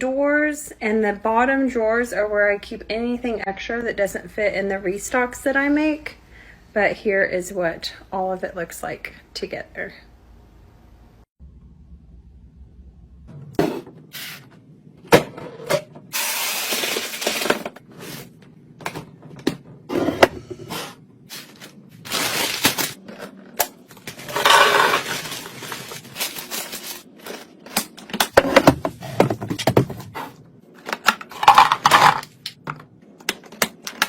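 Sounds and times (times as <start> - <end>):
packaging rustling: 21.2 - 28.2.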